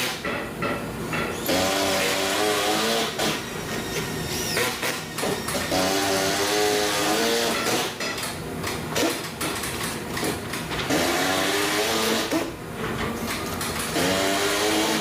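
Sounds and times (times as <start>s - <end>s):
power tool motor whine: 13.9s - 15.0s.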